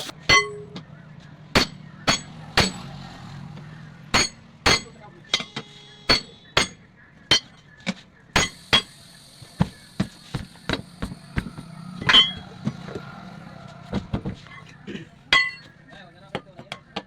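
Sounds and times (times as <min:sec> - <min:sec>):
hammer blows on metal: 0:04.1 - 0:07.6, 0:08.4 - 0:12.8
steady low hum: 0:08.3 - 0:15.6.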